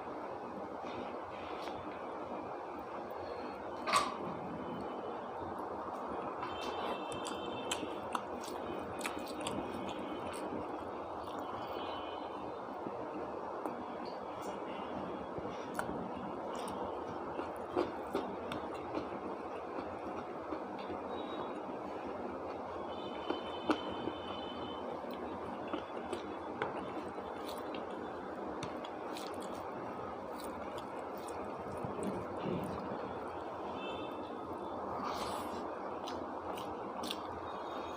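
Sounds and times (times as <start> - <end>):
person chewing: 6.6 - 11.9, 16.5 - 19.1, 25.1 - 33.3, 35.0 - 37.3.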